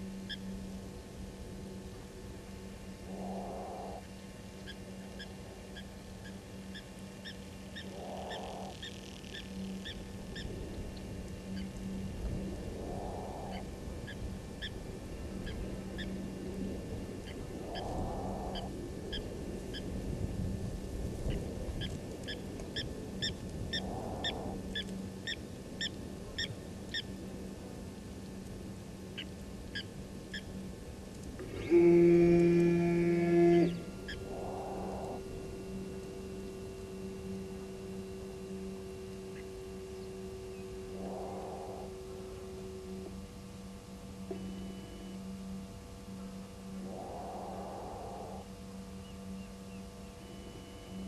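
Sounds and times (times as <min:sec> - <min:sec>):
steady low hum: 0:00.0 - 0:51.0
hoarse animal call: 0:03.1 - 0:04.1, 0:07.8 - 0:08.9, 0:12.7 - 0:13.7, 0:17.6 - 0:18.7, 0:23.8 - 0:24.6, 0:31.4 - 0:39.5, 0:40.8 - 0:43.1, 0:46.7 - 0:48.5.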